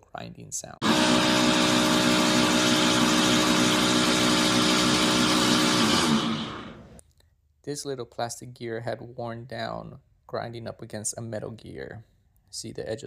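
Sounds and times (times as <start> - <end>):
washing machine grinding noise: 0.8 - 7.0
washing machine hum: 0.8 - 7.0.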